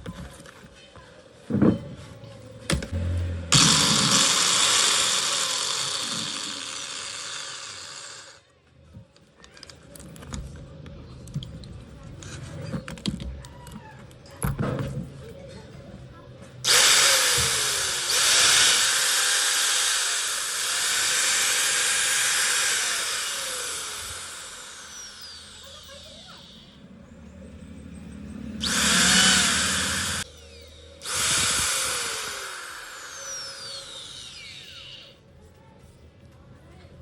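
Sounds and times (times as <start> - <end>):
electric grinder whining: 3.5 - 8.4, 16.7 - 26.6, 28.6 - 30.3, 31.0 - 35.1.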